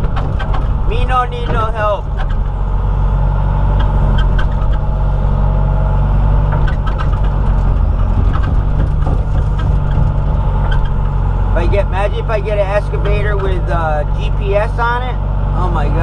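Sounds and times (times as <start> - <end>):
machine clicks and knocks: 0.0 - 2.6, 6.5 - 11.2
excavator diesel engine running: 0.0 - 16.0.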